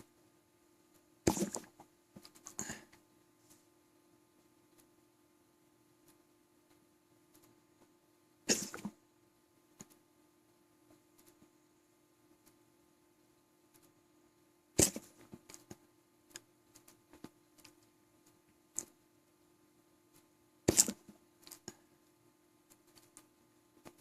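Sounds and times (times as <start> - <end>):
sharp hiccups: 8.5 - 8.9.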